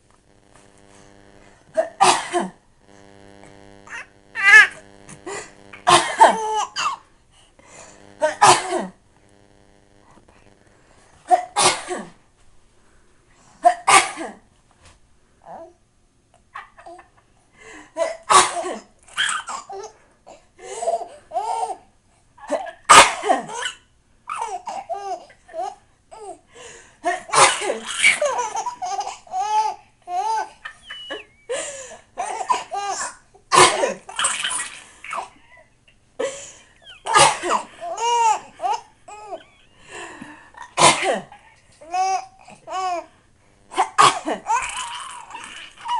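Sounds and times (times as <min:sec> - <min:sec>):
baby laughing: 0:03.8 - 0:04.8, 0:27.7 - 0:31.4, 0:36.8 - 0:39.8, 0:43.8 - 0:45.9
adult fake sneezes and coughs: 0:11.3 - 0:12.2, 0:13.6 - 0:14.4, 0:18.0 - 0:19.7, 0:22.5 - 0:23.8, 0:27.1 - 0:28.2, 0:32.2 - 0:35.4, 0:37.1 - 0:37.8, 0:40.6 - 0:41.4, 0:43.7 - 0:44.4.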